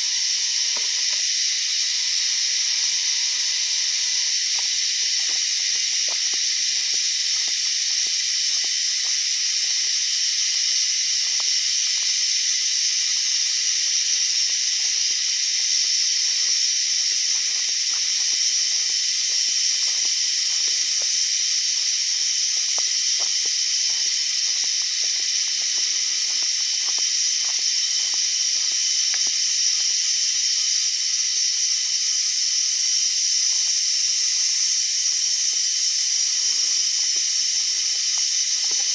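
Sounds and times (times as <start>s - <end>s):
cicadas buzzing: 0.0s - 38.9s.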